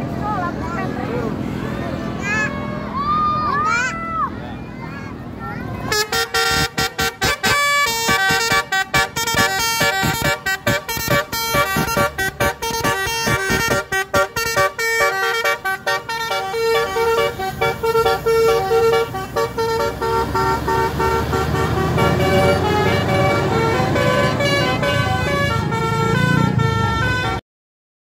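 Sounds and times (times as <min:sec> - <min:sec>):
bus multi-tone horn melody: 0:05.8 - 0:27.4.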